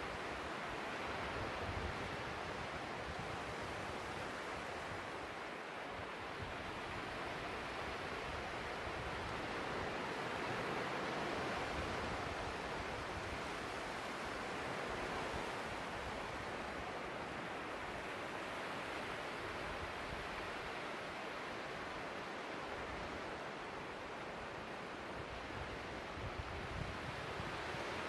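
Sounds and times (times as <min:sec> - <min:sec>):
sea surf on beach: 0:00.0 - 0:28.0
wind rumbling on microphone: 0:25.5 - 0:28.0.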